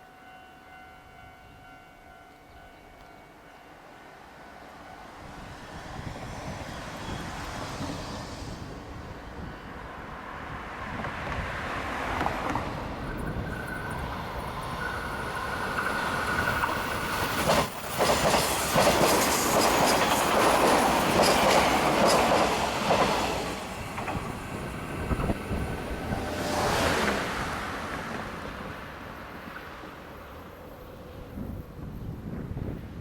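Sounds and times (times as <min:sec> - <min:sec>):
train wheels clattering over rails: 0:12.1 - 0:28.8.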